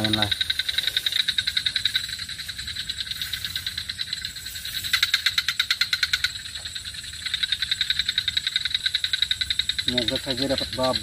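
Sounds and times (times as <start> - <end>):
animals calling in rapid trill: 0.0 - 6.3
steady high hiss: 0.0 - 11.0.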